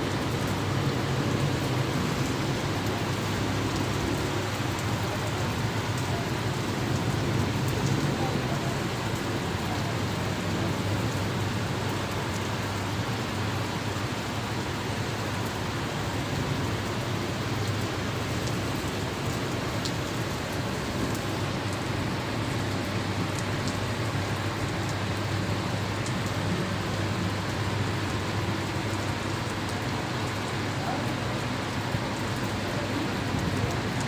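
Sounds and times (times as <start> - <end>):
rain hissing: 0.0 - 34.0
sharp drip ticks: 1.6 - 8.2, 17.4 - 34.0.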